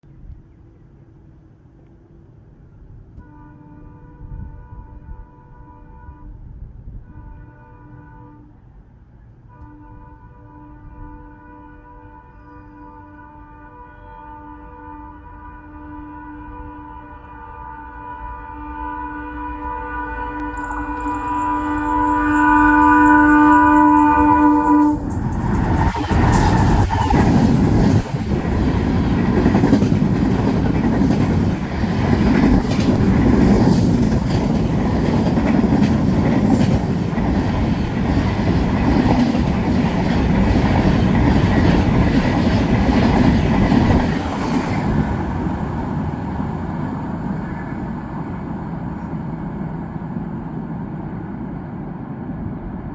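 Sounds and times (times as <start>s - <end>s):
locomotive air horn blast: 3.2s - 6.5s, 9.5s - 27.2s
train passing with wheels clattering: 19.6s - 52.9s.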